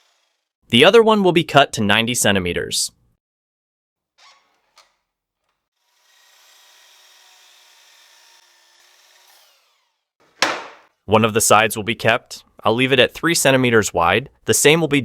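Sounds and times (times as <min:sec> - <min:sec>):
saw cutting a board: 0:00.0 - 0:00.5, 0:04.2 - 0:05.0, 0:05.6 - 0:10.1
sharp knock: 0:10.4 - 0:10.9.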